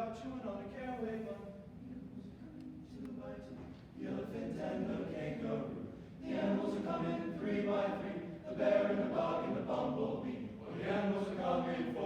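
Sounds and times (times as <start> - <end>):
choir singing a cappella: 4.0 - 12.0.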